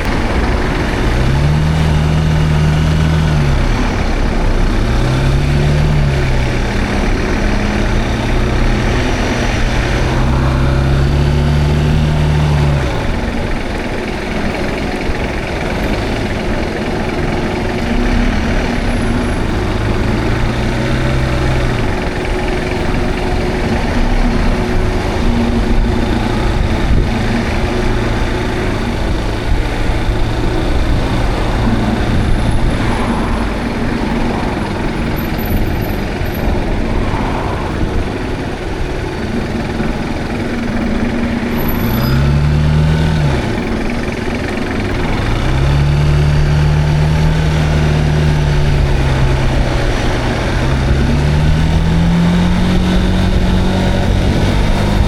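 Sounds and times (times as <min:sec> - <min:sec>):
motorcycle engine running: 0:00.0 - 0:55.0
wind rushing over camera: 0:21.6 - 0:41.5.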